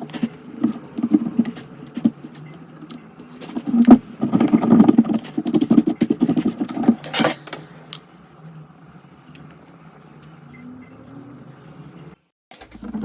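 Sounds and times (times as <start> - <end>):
glass scraping and clicking: 0.0 - 7.6
faint steady hum: 0.0 - 13.0.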